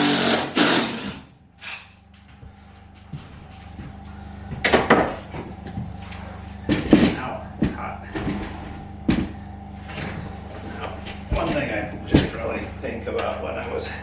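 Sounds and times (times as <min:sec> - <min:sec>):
steady low hum: 0:00.0 - 0:14.0
tools knocking and clunking: 0:06.7 - 0:10.2.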